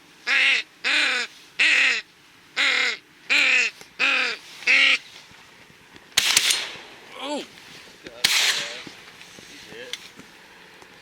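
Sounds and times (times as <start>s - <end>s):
duck call quacks: 0.3s - 2.0s, 2.6s - 5.0s.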